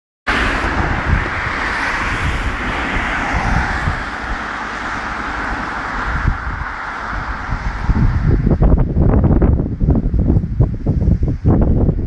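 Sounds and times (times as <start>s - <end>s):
wind buffeting microphone: 0.3s - 12.0s
waterfall rushing: 0.4s - 7.9s.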